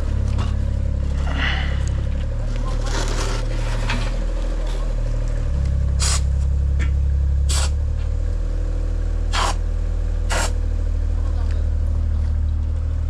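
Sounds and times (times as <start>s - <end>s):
heavy machinery engine humming: 0.0s - 13.0s
short sharp noisy sounds: 6.0s - 6.3s, 7.5s - 7.8s, 9.3s - 9.6s, 10.3s - 10.6s.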